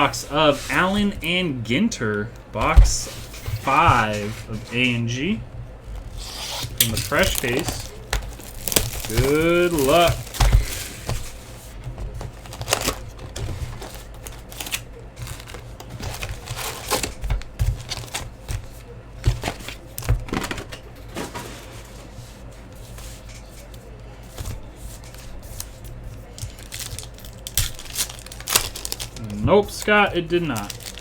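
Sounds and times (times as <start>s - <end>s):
card packs clicking and tapping: 2.3s - 5.0s, 5.9s - 21.7s, 23.6s - 31.0s
plastic wrapper crinkling: 5.9s - 11.4s, 12.2s - 18.2s, 26.3s - 31.0s.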